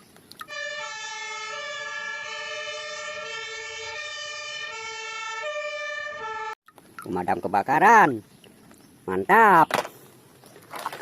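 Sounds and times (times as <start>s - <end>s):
two-tone fire engine siren: 0.4s - 6.6s.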